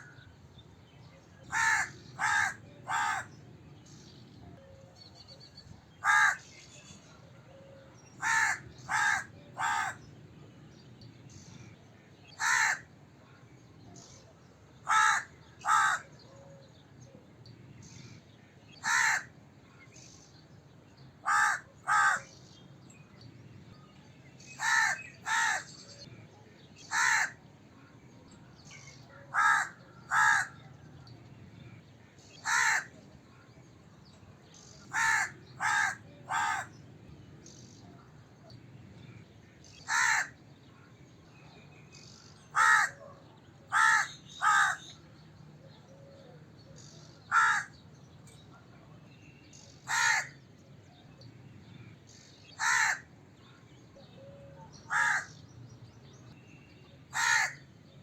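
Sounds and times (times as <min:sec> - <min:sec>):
crow cawing: 0:01.5 - 0:03.3, 0:06.0 - 0:06.4, 0:08.2 - 0:10.0, 0:12.4 - 0:12.9, 0:14.8 - 0:16.1, 0:18.8 - 0:19.3, 0:21.2 - 0:22.3, 0:24.6 - 0:25.7, 0:26.9 - 0:27.4, 0:29.3 - 0:30.6, 0:32.4 - 0:32.9, 0:34.9 - 0:36.7, 0:39.9 - 0:40.4, 0:42.6 - 0:43.0, 0:43.7 - 0:44.9, 0:47.3 - 0:47.8, 0:49.9 - 0:50.4, 0:52.6 - 0:53.1, 0:54.9 - 0:55.4, 0:57.1 - 0:57.6.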